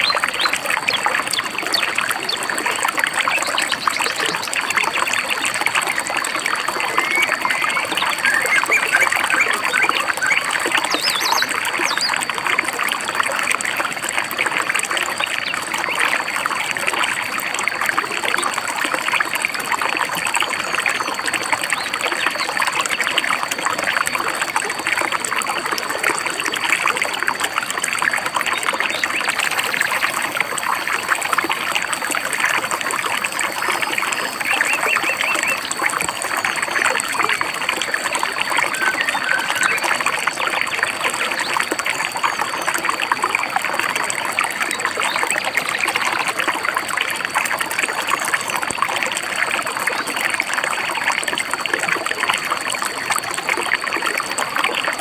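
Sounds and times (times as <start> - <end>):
stream babbling: 0.0 - 55.0
bird chirps: 6.8 - 12.2, 33.5 - 37.5, 38.2 - 40.1.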